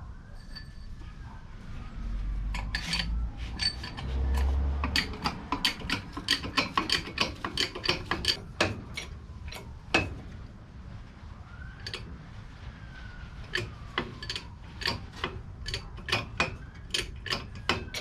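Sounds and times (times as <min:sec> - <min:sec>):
hydraulic jack pumping clicks: 0:02.6 - 0:10.1.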